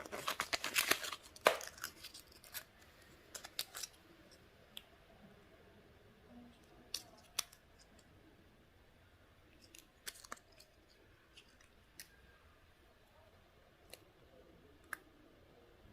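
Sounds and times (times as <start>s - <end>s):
plastic packaging clicks and taps: 0.1s - 1.9s.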